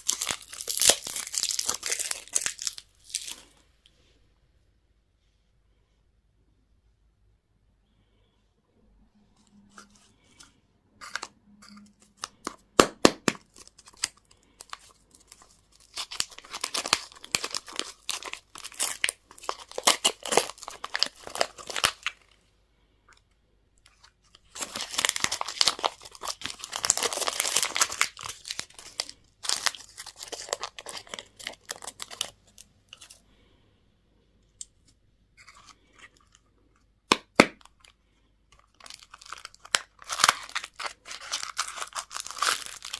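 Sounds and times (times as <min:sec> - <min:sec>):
candy wrappers crinkling: 0:00.0 - 0:03.6, 0:09.7 - 0:22.4, 0:23.8 - 0:33.2, 0:34.6 - 0:42.9.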